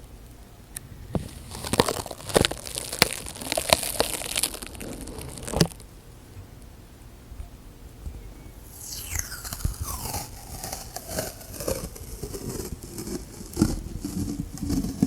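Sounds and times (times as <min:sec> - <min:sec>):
plastic and tape crinkling: 0:01.4 - 0:05.7
squeal falling in pitch: 0:08.7 - 0:11.8.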